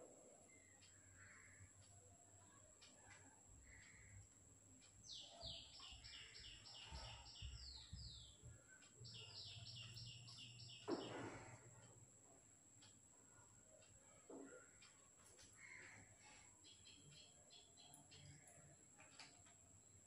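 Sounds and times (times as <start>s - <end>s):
small bird chirping: 0.4s - 20.0s.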